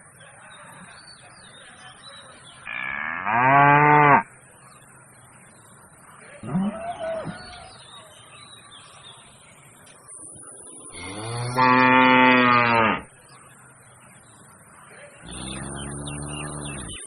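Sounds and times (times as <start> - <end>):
bull mooing: 11.0 - 13.1, 15.2 - 17.0.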